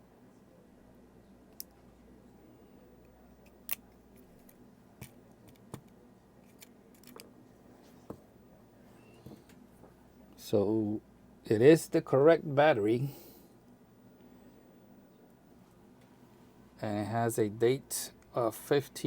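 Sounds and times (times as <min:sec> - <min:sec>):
small metal tools clicking: 0:06.5 - 0:07.2.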